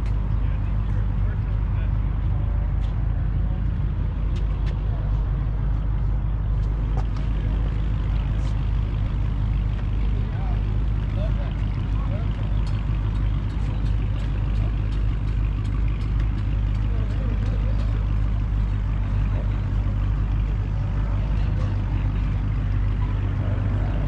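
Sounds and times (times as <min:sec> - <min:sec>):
vehicle engine droning: 0:00.0 - 0:24.0
light regular ticking: 0:10.8 - 0:19.2.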